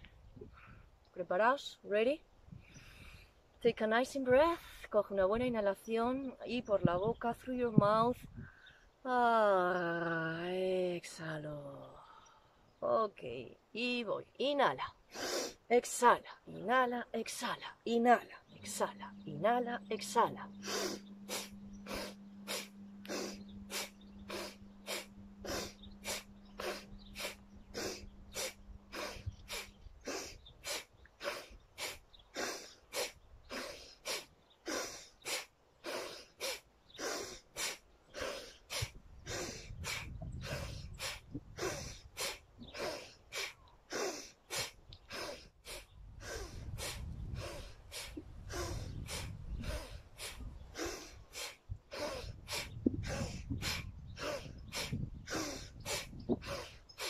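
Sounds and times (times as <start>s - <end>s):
rapid forceful nose breathing: 20.6s - 57.0s.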